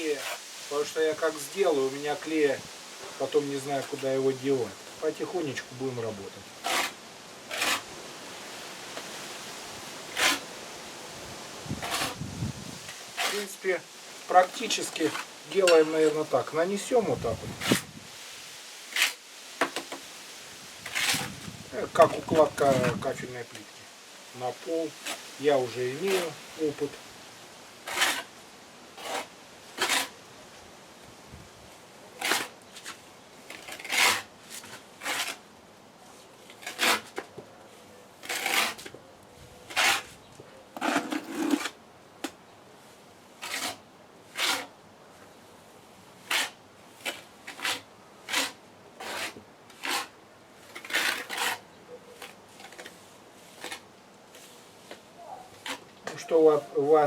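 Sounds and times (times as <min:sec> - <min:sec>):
trowel scraping adhesive: 0:06.6 - 0:07.9, 0:10.1 - 0:10.5, 0:11.8 - 0:12.2, 0:12.9 - 0:13.6, 0:17.3 - 0:17.9, 0:20.8 - 0:21.4, 0:25.8 - 0:26.9, 0:27.8 - 0:28.3, 0:29.0 - 0:30.2, 0:32.2 - 0:35.4, 0:36.5 - 0:37.3, 0:38.2 - 0:39.0, 0:39.7 - 0:40.1, 0:40.8 - 0:41.8, 0:43.4 - 0:44.7, 0:46.2 - 0:51.6, 0:52.2 - 0:54.5, 0:55.6 - 0:56.3.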